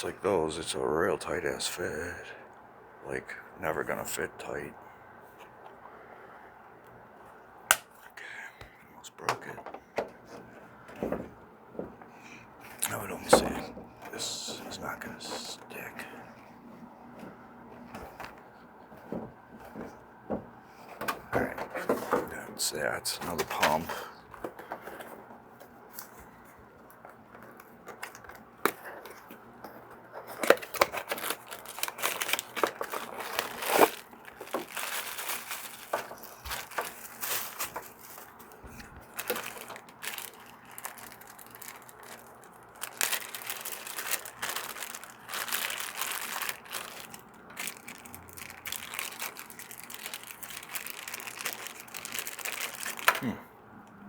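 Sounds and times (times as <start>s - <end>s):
plastic packaging crinkling: 12.6s - 20.0s, 20.9s - 53.3s.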